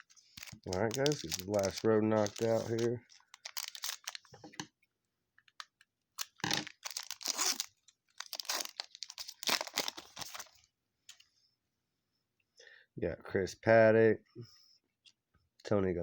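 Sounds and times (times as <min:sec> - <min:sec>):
foil wrapper tearing and crinkling: 0:00.0 - 0:04.3, 0:05.5 - 0:10.7.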